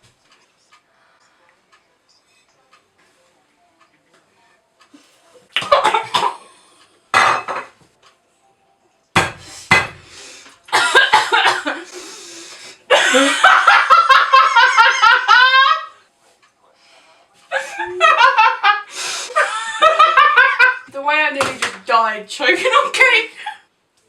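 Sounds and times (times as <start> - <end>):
person coughing: 5.7 - 6.6, 10.7 - 11.9
rhythmic laughter: 12.9 - 16.0, 17.5 - 20.9.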